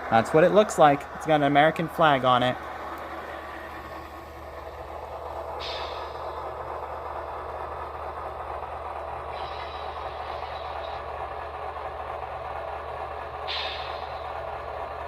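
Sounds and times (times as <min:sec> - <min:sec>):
diesel locomotive rumble from speaker: 0:00.0 - 0:15.0
air hisses: 0:05.6 - 0:06.3, 0:09.3 - 0:11.0, 0:13.4 - 0:14.3.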